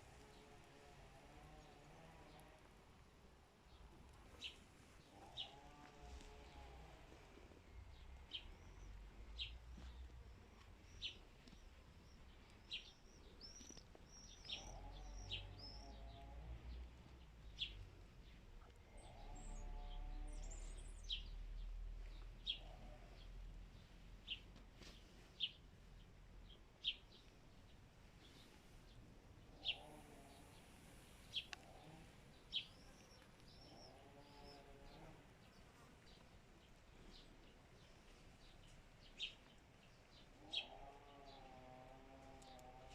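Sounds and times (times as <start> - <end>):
faint low rumble: 0.0 - 40.2
birds chirping: 3.6 - 42.9
lower bird calls: 4.4 - 18.0, 18.6 - 23.5, 28.2 - 35.6, 40.4 - 42.9.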